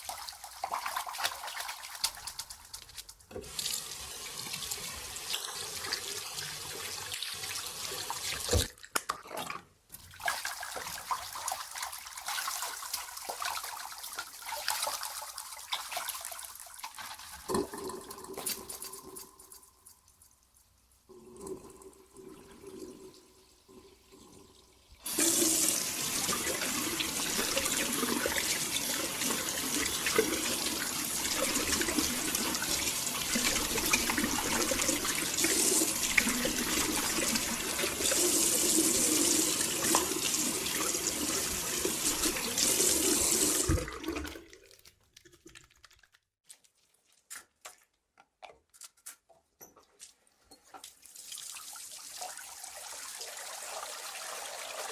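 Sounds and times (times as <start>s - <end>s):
hands washing under water: 0.0s - 3.8s, 10.0s - 20.2s, 25.0s - 49.0s
tap water running into sink: 25.0s - 44.5s.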